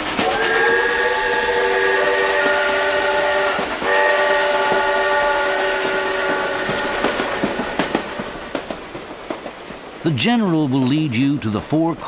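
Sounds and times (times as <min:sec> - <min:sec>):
train whistle: 0:00.2 - 0:08.0.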